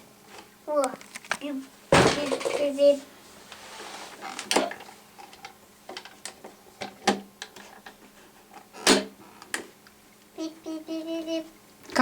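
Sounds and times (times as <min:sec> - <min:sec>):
plastic toys clicking and knocking: 0:02.0 - 0:02.8.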